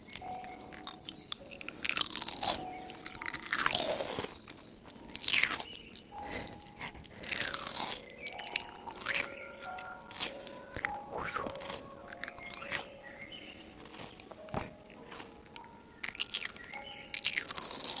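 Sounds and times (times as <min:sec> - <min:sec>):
crisp food crunching: 0:00.0 - 0:18.0.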